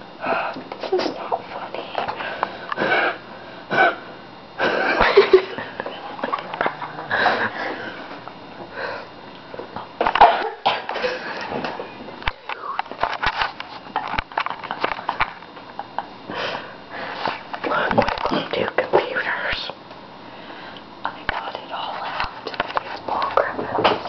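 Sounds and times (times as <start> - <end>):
person coughing: 10.1 - 11.2.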